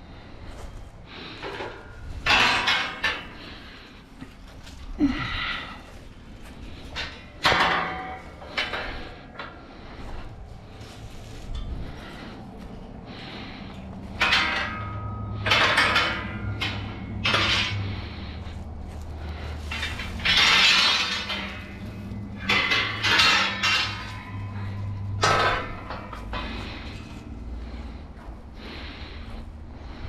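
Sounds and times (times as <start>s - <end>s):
low hum: 0.0s - 30.0s
clattering clinking crashes: 1.8s - 3.6s, 7.0s - 9.2s, 14.1s - 18.3s, 19.2s - 28.0s.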